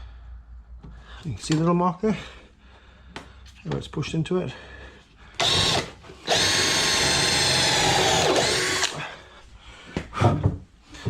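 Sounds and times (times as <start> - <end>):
electric drill boring wood: 5.4 - 9.0.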